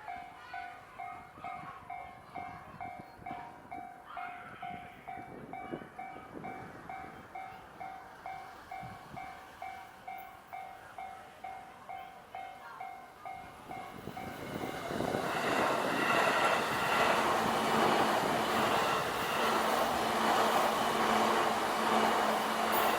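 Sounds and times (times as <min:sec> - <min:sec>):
train running past: 0:00.0 - 0:22.9.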